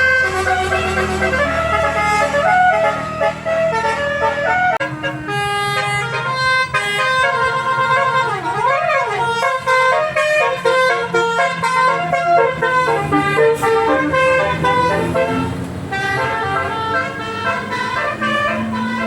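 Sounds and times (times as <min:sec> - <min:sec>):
low engine rumble: 0:00.0 - 0:19.0
multi-tone bus horn melody: 0:00.0 - 0:19.0.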